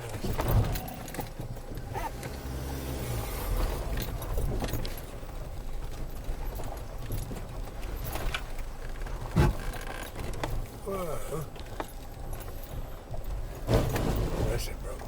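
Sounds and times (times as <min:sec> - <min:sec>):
car engine at low revs: 0:00.0 - 0:09.6
vehicle knocks and rattles: 0:00.0 - 0:15.0.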